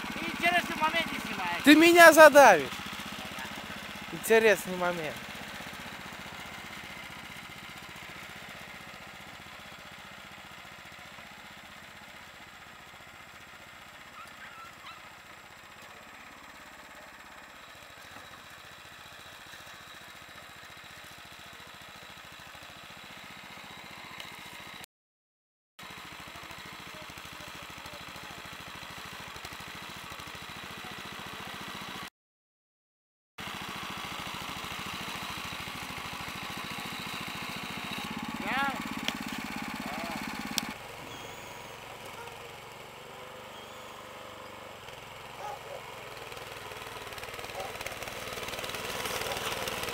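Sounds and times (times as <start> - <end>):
tractor engine under load: 0.0 - 14.1, 25.8 - 32.0, 33.4 - 49.9.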